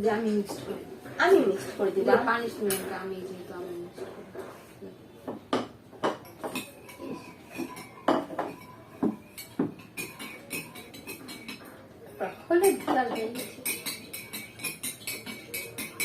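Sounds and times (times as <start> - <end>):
spoon clinking against container: 6.1 - 11.7, 12.3 - 16.0.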